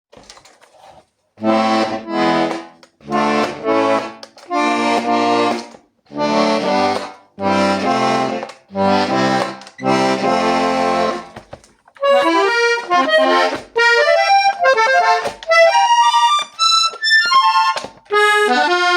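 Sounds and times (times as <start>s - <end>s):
accordion playing chords: 1.4s - 18.9s.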